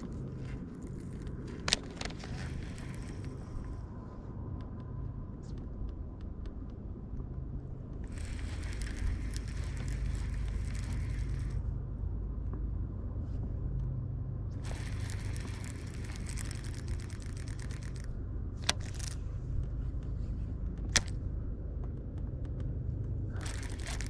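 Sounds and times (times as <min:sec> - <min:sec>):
faint ticks: 0:00.0 - 0:11.7, 0:14.6 - 0:21.2
boat motor humming: 0:00.0 - 0:12.5, 0:14.5 - 0:24.0.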